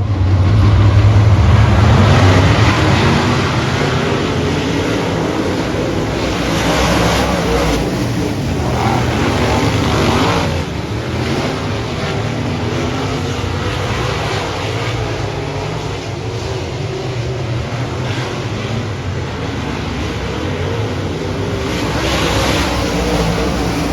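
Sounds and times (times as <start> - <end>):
race car engines passing: 0.0 - 23.9
steady rush of noise: 0.0 - 23.9.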